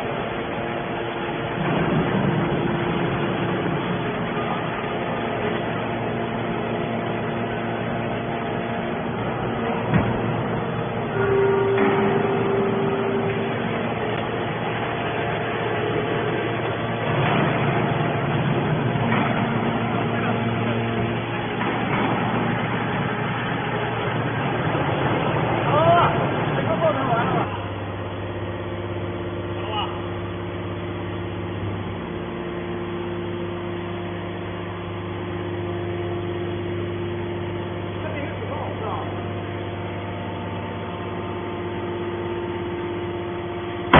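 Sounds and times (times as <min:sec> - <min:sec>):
can baler mechanical hum: 0:00.0 - 0:43.9
held tone: 0:11.0 - 0:14.2.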